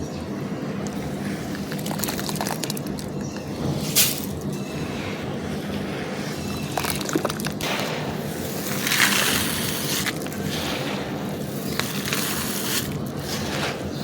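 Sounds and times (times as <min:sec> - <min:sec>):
dry material crumbling: 0:11.5 - 0:13.9.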